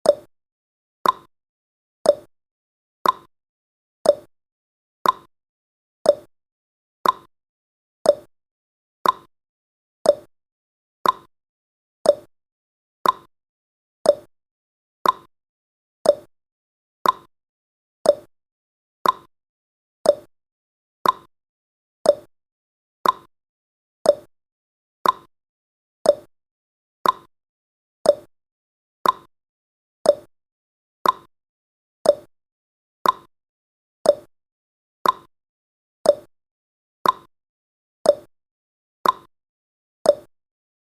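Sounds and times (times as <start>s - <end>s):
clock ticking: 3.0s - 3.3s, 5.0s - 5.3s, 7.0s - 7.3s, 9.0s - 9.3s, 11.0s - 11.3s, 13.0s - 13.3s, 15.0s - 15.3s, 16.1s - 16.3s, 17.0s - 17.3s, 18.1s - 18.3s, 19.0s - 19.3s, 20.1s - 20.3s, 21.0s - 21.3s, 22.1s - 22.3s, 23.0s - 23.3s, 24.1s - 24.3s, 25.0s - 25.3s, 26.1s - 26.3s, 27.0s - 27.3s, 29.0s - 29.3s, 30.1s - 30.3s, 31.0s - 31.3s, 32.1s - 32.3s, 33.0s - 33.3s, 34.1s - 34.3s, 35.0s - 35.3s, 36.1s - 36.3s, 37.0s - 37.3s, 38.1s - 38.3s, 39.0s - 39.3s, 40.1s - 40.3s.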